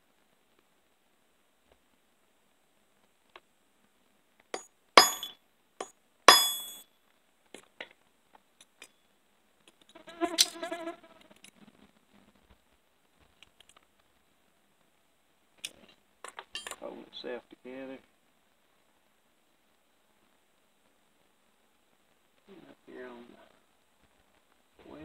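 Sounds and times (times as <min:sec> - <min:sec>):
hammer striking steel punch: 0:04.6 - 0:05.4, 0:06.3 - 0:06.8.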